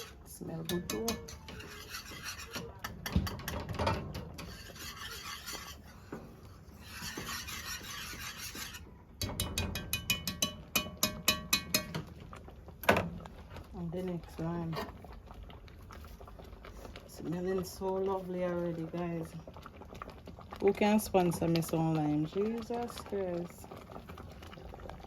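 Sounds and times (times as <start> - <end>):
spoon clinking on metal pot: 0.0 - 3.7, 8.6 - 12.1
spoon stirring thick jam: 0.0 - 25.0.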